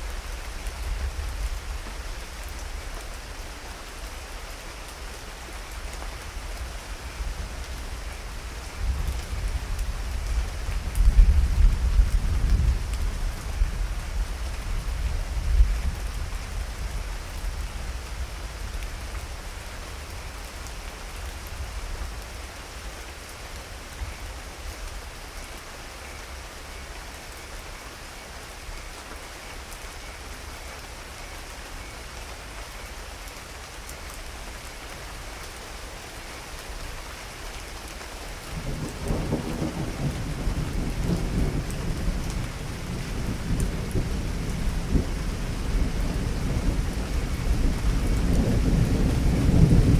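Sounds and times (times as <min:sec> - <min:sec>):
steady rain: 0:00.0 - 0:49.9
thunder rumbling: 0:38.5 - 0:49.9.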